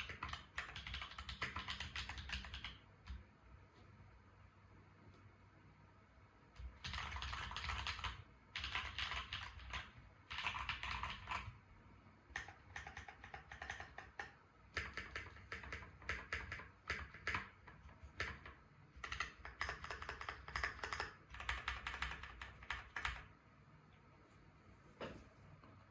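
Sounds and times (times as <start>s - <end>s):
mechanical keyboard typing: 0.0s - 3.2s, 6.6s - 11.6s, 12.3s - 23.3s.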